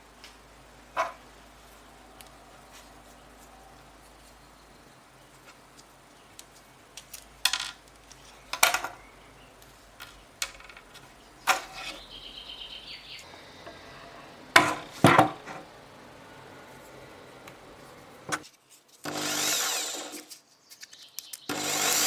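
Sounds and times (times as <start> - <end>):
sharp knocks and scrapes: 10.0 - 12.0.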